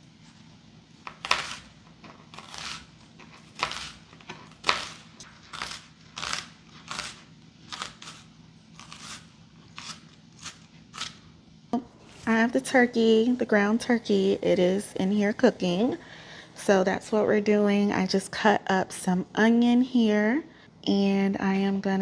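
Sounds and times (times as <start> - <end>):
knife cutting onion on board: 1.0 - 11.2.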